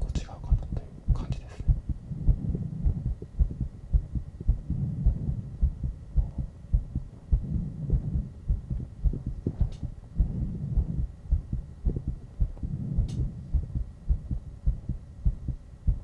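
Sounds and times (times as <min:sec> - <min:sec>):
heartbeat thumps: 0:00.0 - 0:16.0.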